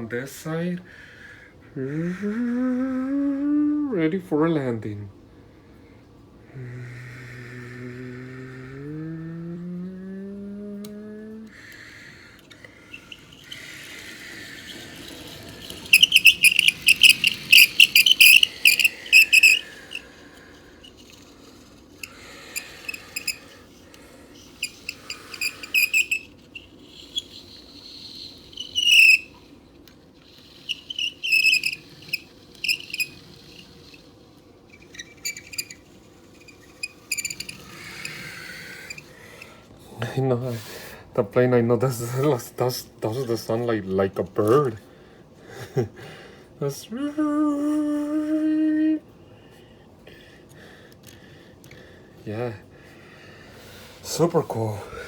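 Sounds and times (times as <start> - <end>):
electronic toy chirping: 12.8 - 20.0, 24.4 - 29.4, 30.3 - 34.1, 36.4 - 39.1.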